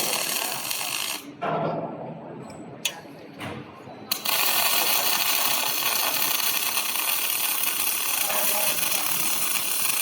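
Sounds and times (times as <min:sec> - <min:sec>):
welding arc hissing: 0:00.0 - 0:01.4, 0:04.1 - 0:10.0.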